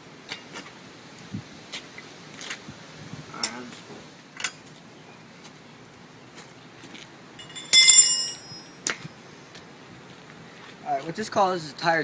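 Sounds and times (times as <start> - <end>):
ringing metallic strike: 7.4 - 8.7.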